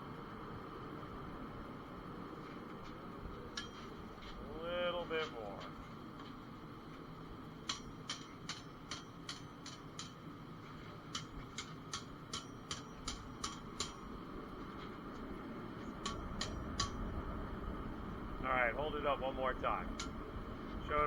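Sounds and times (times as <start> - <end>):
hammer striking blade on anvil: 3.6 - 4.0, 7.6 - 10.3, 11.0 - 14.1, 16.0 - 17.0.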